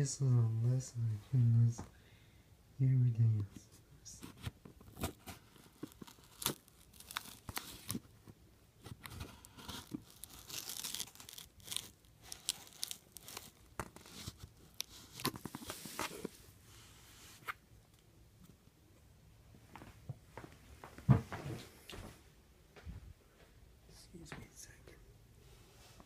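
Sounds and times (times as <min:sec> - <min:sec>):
packaging tearing and crinkling: 0:04.9 - 0:08.0, 0:08.9 - 0:15.9.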